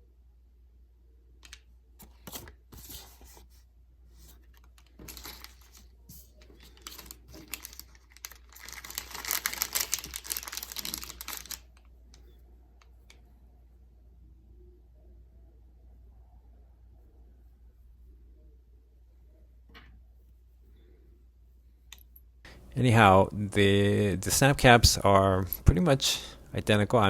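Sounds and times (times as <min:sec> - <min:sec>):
plastic packaging crinkling: 0:04.7 - 0:11.8.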